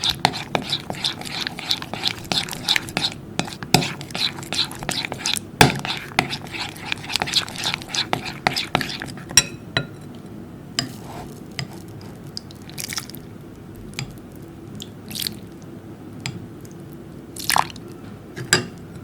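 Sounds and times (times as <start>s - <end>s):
slime squelching: 0.0s - 9.3s, 10.8s - 13.3s, 14.8s - 15.6s.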